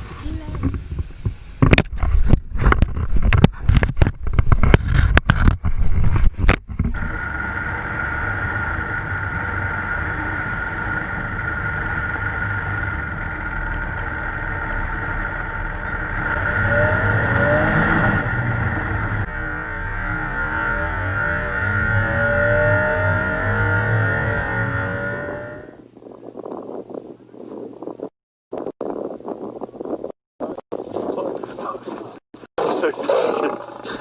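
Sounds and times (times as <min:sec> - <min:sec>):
engine-like drone with high whine: 0:06.7 - 0:25.8.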